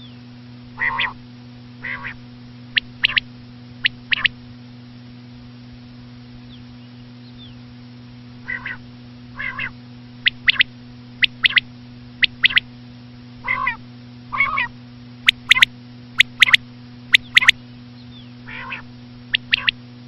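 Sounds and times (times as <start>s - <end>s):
quail rasping notes: 0.8s - 1.2s, 1.8s - 2.2s, 2.8s - 4.3s, 8.4s - 8.8s, 9.4s - 12.7s, 13.4s - 14.7s, 15.3s - 17.6s, 18.4s - 19.8s
quail three-note calls: 0.8s - 1.2s, 1.8s - 2.2s, 2.8s - 3.2s, 3.8s - 4.3s, 8.4s - 8.8s, 9.4s - 12.7s, 13.4s - 14.7s, 15.3s - 17.6s, 18.4s - 19.8s.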